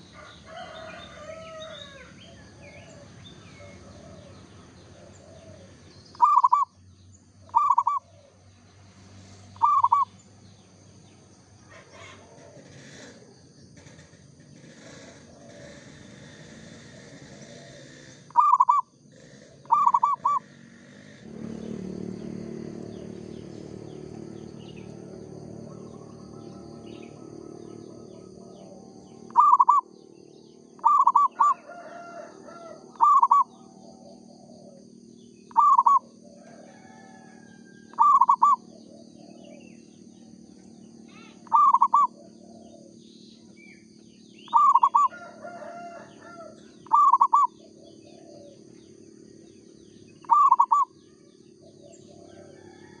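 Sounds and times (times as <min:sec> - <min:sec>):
dove cooing: 0:00.0 - 0:06.7, 0:07.5 - 0:08.4, 0:09.6 - 0:10.1, 0:11.7 - 0:13.2, 0:14.8 - 0:21.7, 0:24.7 - 0:29.9, 0:30.8 - 0:34.8, 0:35.5 - 0:40.0, 0:41.1 - 0:43.6, 0:44.4 - 0:49.3, 0:49.9 - 0:53.0.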